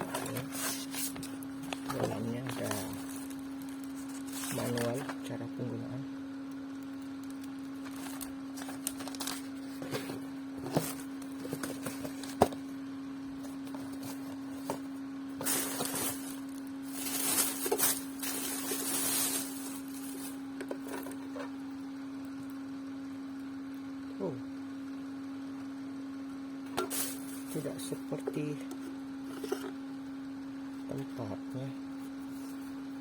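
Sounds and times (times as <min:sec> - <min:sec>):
packaging rustling: 0:00.0 - 0:05.2, 0:07.4 - 0:12.6, 0:13.5 - 0:21.3
steady hum: 0:00.0 - 0:33.0.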